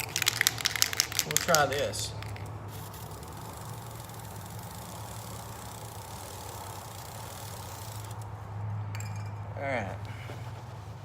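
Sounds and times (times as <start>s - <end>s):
aerosol spray hissing: 2.7s - 8.2s.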